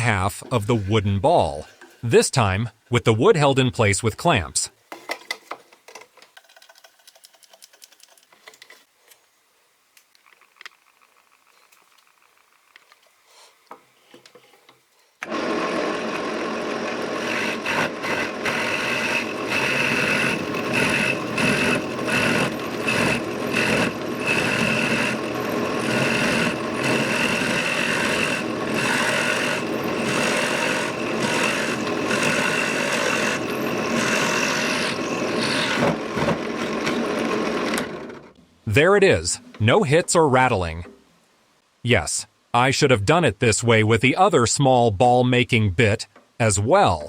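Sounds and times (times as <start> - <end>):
drill press cutting wood: 15.2 - 38.3.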